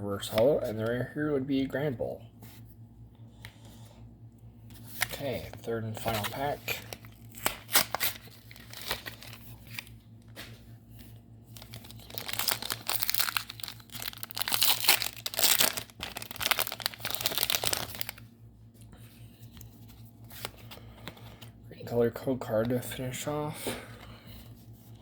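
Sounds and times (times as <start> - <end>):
foil wrapper crinkling: 6.0 - 10.4, 11.5 - 18.2.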